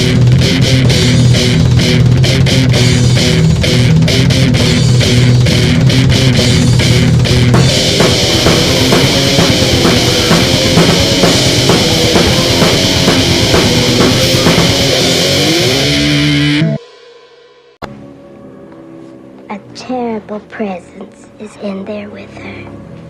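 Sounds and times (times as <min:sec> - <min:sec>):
grindcore band playing: 0:00.0 - 0:17.9
cymbal wash: 0:00.0 - 0:18.2.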